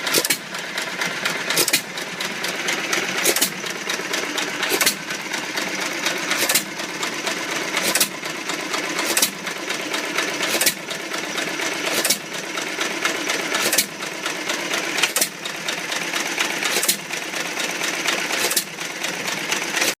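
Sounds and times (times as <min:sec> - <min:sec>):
stationary engine banging and clattering: 0:00.0 - 0:20.0.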